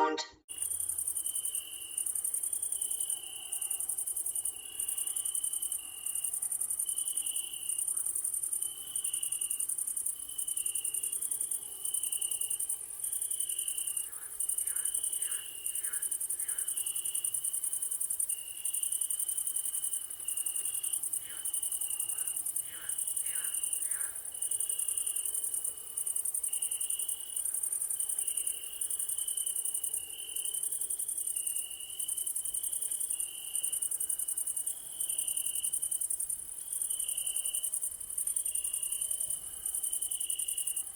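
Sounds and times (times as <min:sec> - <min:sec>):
crickets chirping: 0:00.5 - 0:40.9
two-pitch insect call: 0:20.4 - 0:25.2.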